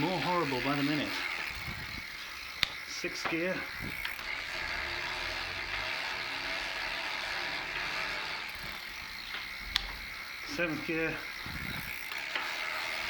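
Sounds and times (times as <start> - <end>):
gear hub ratcheting rattle: 0.0 - 13.0.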